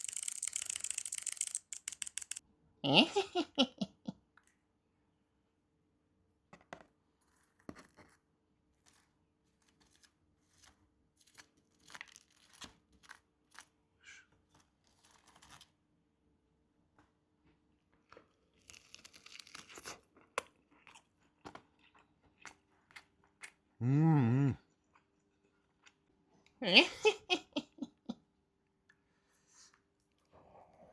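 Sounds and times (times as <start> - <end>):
packaging tearing: 0.0 - 2.4, 18.6 - 19.9.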